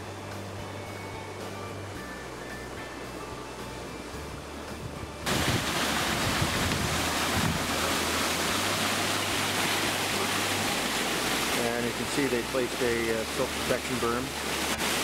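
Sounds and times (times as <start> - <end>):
water rushing: 5.2 - 15.0.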